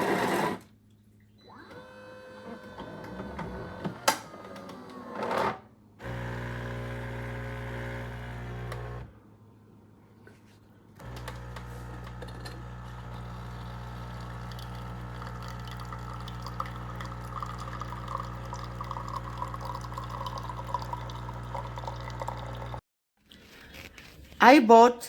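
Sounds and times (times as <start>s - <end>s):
espresso machine humming: 6.0s - 9.1s, 11.0s - 22.8s
water trickling and spattering: 14.2s - 22.8s.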